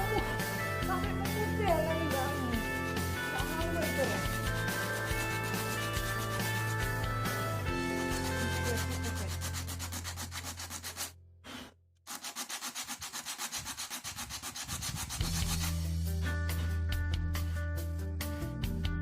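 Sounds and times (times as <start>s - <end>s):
sandpaper scraping painted shell: 0.1s - 11.2s, 12.1s - 16.0s.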